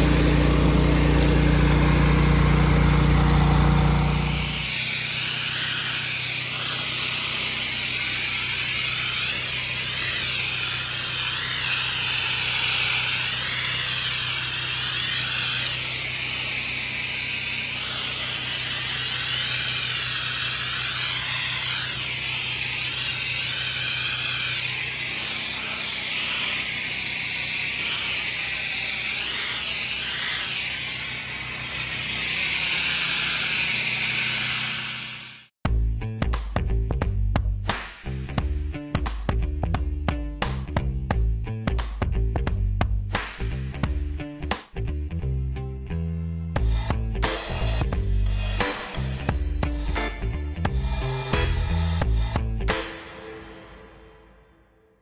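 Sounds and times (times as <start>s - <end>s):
engine and pump hum: 0.0s - 35.5s
pressure washer spray hissing: 0.0s - 35.5s.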